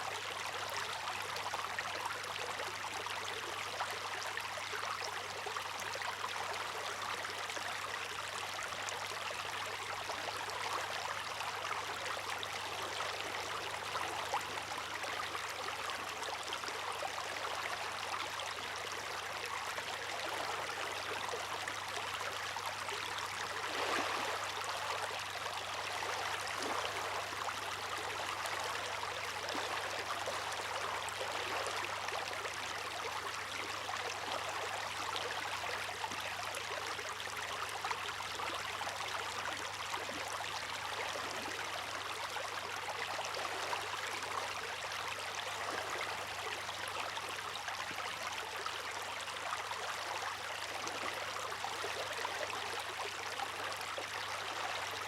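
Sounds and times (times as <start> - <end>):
water rushing and splashing: 23.6 - 24.5.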